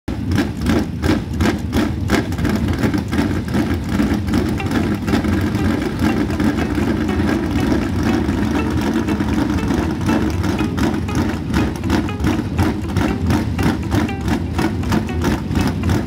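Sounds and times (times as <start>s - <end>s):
race car engine running: 0.1s - 16.0s.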